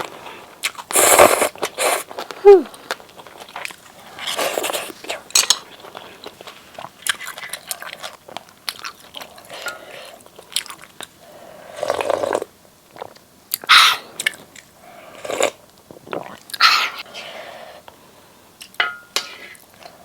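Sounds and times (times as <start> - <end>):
wet chewing and mouth smacks: 0.6 - 11.2.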